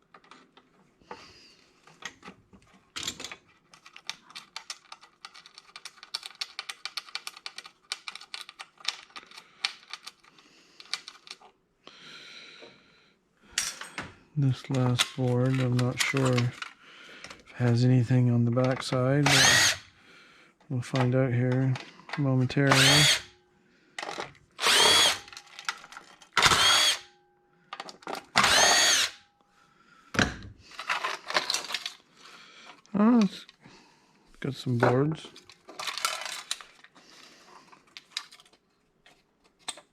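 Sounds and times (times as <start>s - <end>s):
power drill whirring: 19.2s - 19.9s, 22.7s - 23.3s, 24.6s - 25.4s, 26.4s - 27.1s, 28.4s - 29.2s
loose metal parts rattling: 30.7s - 32.0s, 35.0s - 36.9s.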